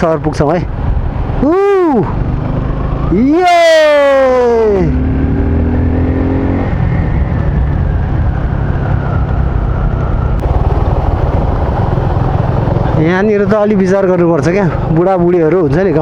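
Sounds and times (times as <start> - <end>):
motorcycle engine running: 2.0 - 3.2, 7.4 - 16.0
pitched whine: 4.9 - 13.4
wind rushing: 5.1 - 13.8.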